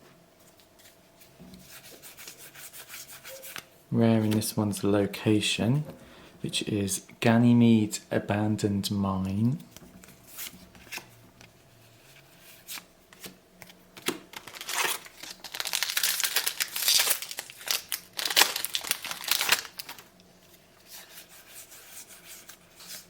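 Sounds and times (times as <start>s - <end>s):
wrapper tearing and crinkling: 14.3s - 20.1s.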